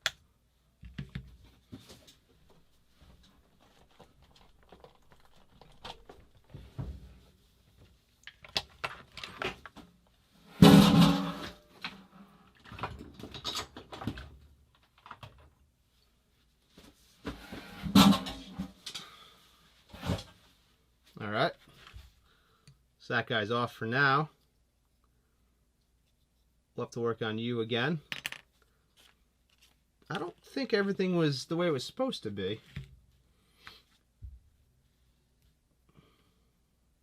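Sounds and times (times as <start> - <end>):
clunk: 10.6 - 11.9
tools handled on a workbench: 28.1 - 30.4.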